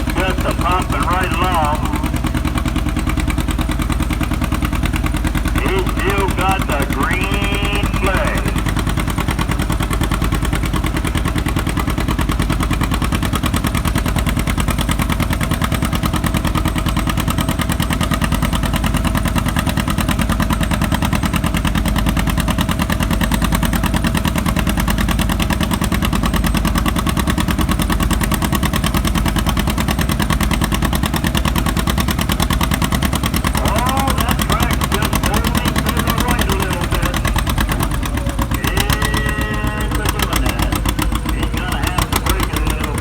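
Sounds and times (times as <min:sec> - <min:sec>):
tractor engine pulling under load: 0:00.0 - 0:43.0.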